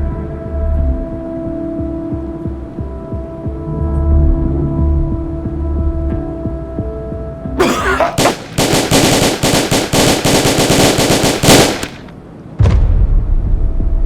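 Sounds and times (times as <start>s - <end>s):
machine-gun fire: 7.6s - 12.2s.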